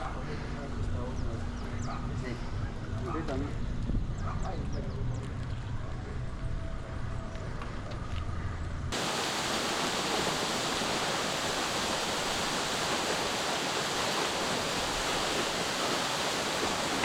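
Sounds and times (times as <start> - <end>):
waterfall rushing: 9.0 - 17.0.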